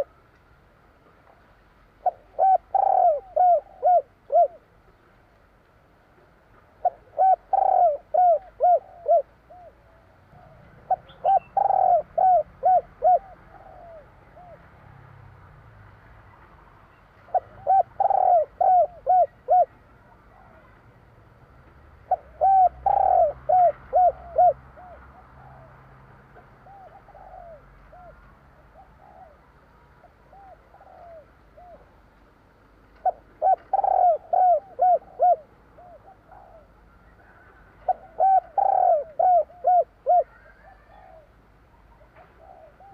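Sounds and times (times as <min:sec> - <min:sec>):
dove cooing: 0:00.0 - 0:00.2, 0:02.0 - 0:04.7, 0:06.8 - 0:14.7, 0:17.3 - 0:20.8, 0:22.0 - 0:32.0, 0:33.0 - 0:42.9.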